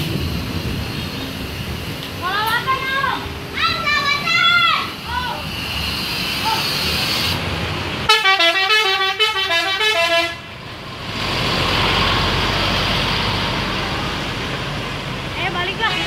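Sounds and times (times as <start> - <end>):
steady rushing noise: 0.0 - 8.1
musical bus horn: 8.0 - 10.5.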